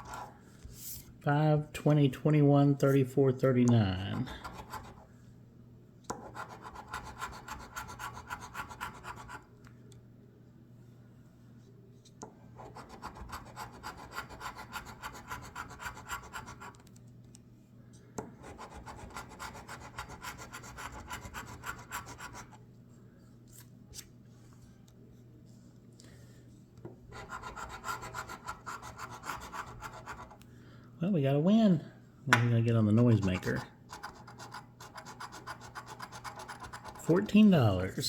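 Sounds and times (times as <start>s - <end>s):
scratch-off ticket being scratched: 33.1s - 37.5s.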